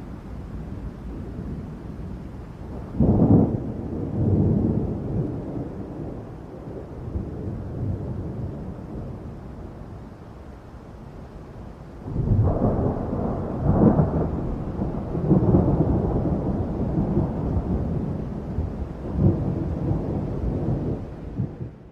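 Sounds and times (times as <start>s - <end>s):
rolling thunder: 0.0s - 10.0s, 12.0s - 21.9s.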